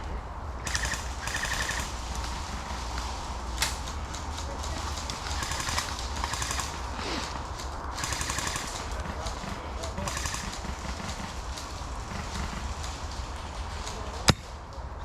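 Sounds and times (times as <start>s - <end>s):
airsoft guns firing bursts: 0.6s - 1.9s, 5.4s - 6.8s, 8.0s - 11.5s.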